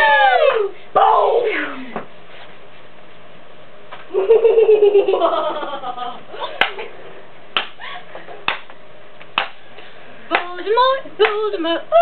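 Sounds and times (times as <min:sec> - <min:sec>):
person laughing: 0:04.1 - 0:06.9, 0:07.8 - 0:08.4
sharp smacks: 0:07.6 - 0:07.8, 0:09.4 - 0:09.6.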